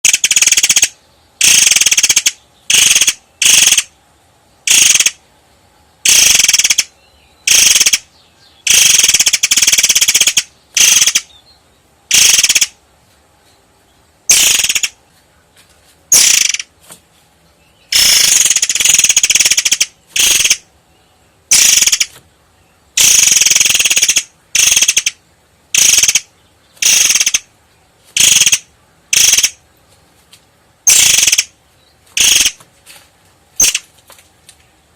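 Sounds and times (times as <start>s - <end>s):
bird singing rattling phrases: 0.0s - 16.8s, 17.4s - 29.9s, 30.8s - 32.6s, 33.5s - 34.0s.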